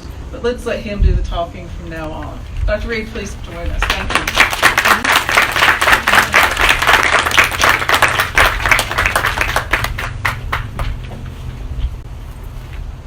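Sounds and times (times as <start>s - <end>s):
audience applauding: 3.8s - 11.1s.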